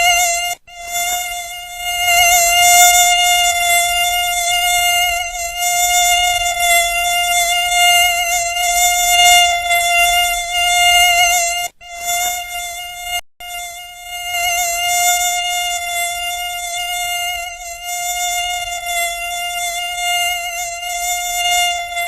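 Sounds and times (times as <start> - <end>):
mosquito whine: 0.0 - 22.0.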